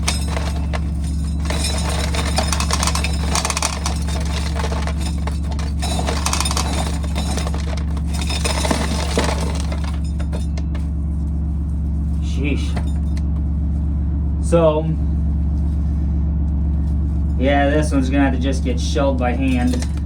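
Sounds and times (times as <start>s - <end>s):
corn kernels rattling: 0.0s - 10.9s.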